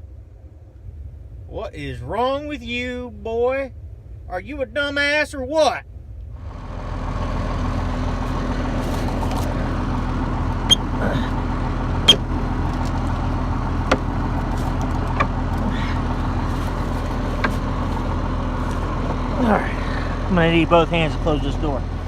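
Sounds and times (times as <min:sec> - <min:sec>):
combine engine running: 0:06.3 - 0:22.0.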